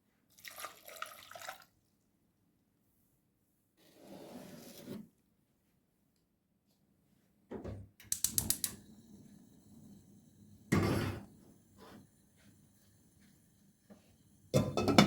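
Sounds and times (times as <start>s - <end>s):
sharp clicks: 8.0s - 8.8s.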